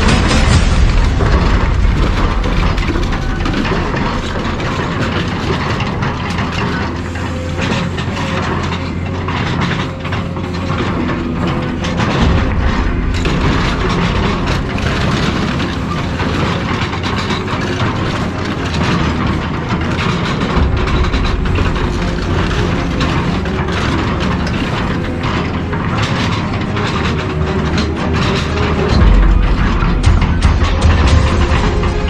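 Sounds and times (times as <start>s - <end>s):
heavy machine engine running: 0.0s - 32.0s
metal crunching and clanking: 0.0s - 32.0s.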